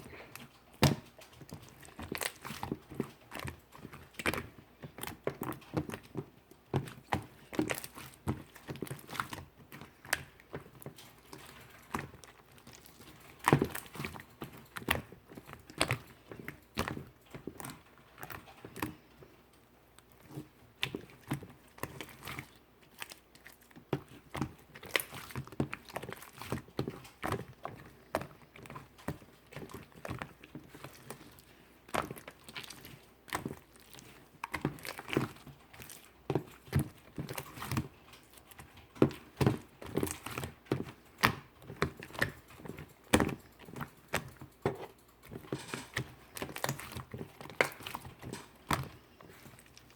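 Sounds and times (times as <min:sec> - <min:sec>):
slime squished by hand: 0:20.0 - 0:49.9.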